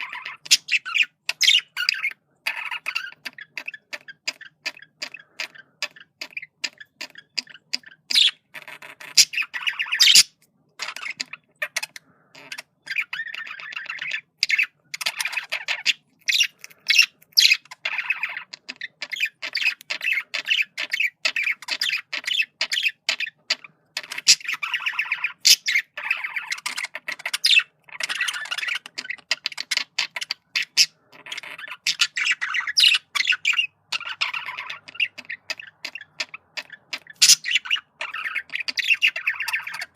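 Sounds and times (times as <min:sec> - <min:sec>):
budgerigar squawks: 0:00.0 - 0:39.9
budgerigar warbling chatter: 0:00.0 - 0:39.9.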